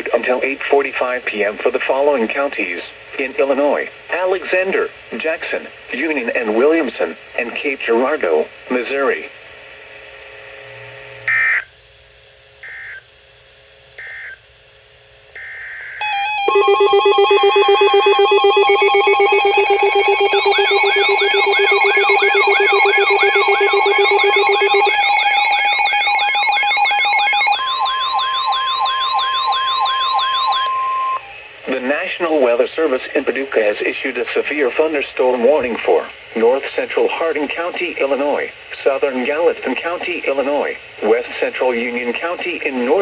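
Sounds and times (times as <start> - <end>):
siren-like alert tone: 16.0 - 31.4, 42.8 - 43.0
short electronic data beeps: 42.8 - 43.0.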